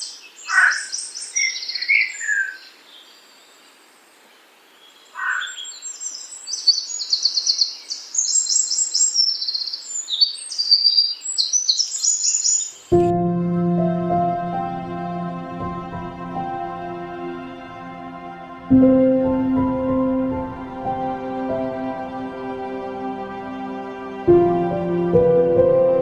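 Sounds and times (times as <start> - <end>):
songbirds trilling and chirping: 0.0 - 13.1
background music: 12.9 - 26.0.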